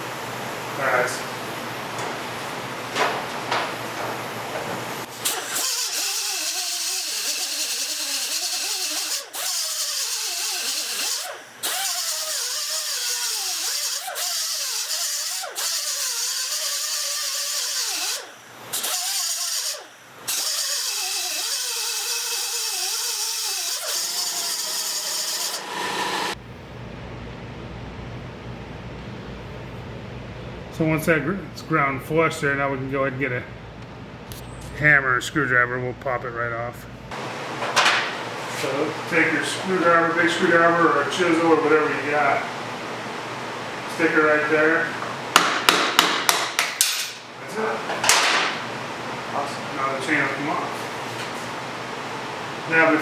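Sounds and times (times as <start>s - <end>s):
die grinder whining: 5.0s - 26.4s.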